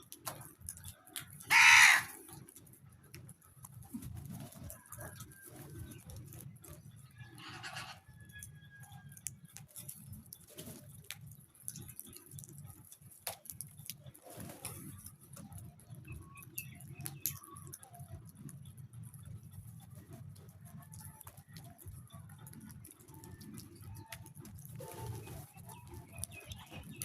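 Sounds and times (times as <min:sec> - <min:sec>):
birds clicking and rustling: 0:00.0 - 0:27.0
wings fluttering: 0:00.1 - 0:08.0, 0:09.2 - 0:27.0
faint bird calls: 0:07.4 - 0:08.0.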